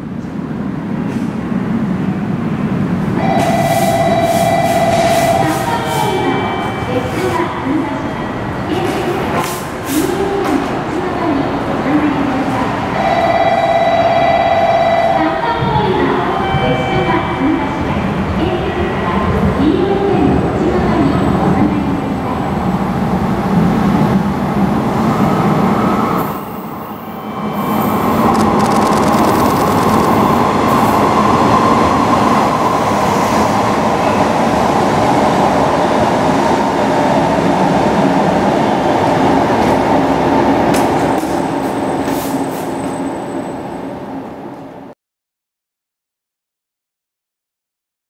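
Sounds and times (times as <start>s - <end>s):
train wheels on rails: 0.2s - 1.7s, 8.4s - 11.0s, 25.1s - 43.6s.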